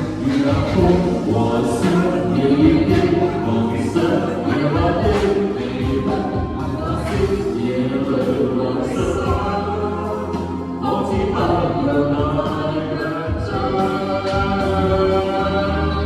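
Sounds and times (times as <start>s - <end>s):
person singing: 0.0s - 16.0s
street band playing pop song: 0.0s - 16.0s.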